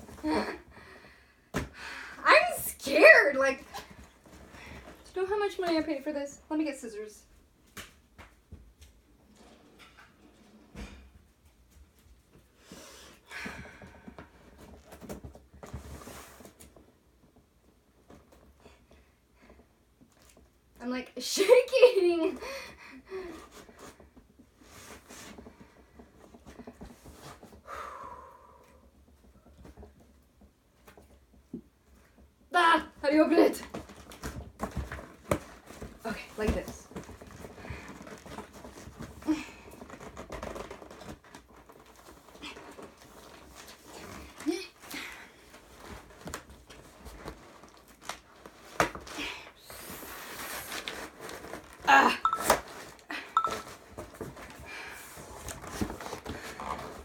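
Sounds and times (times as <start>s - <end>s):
packaging rustling and scraping: 33.7s - 57.0s.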